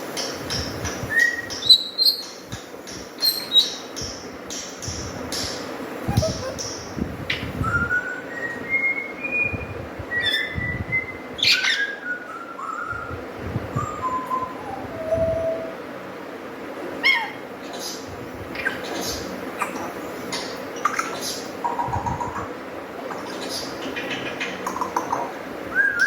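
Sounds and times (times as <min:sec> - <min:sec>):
parrot whistling: 0:06.1 - 0:06.7, 0:10.2 - 0:13.1, 0:13.9 - 0:15.8.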